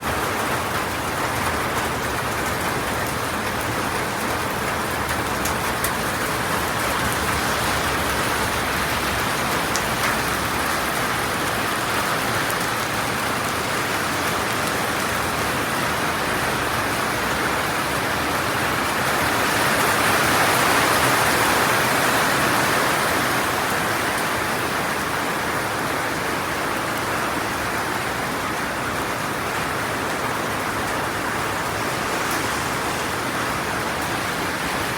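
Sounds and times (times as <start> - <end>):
heavy rain falling: 0.0 - 34.9.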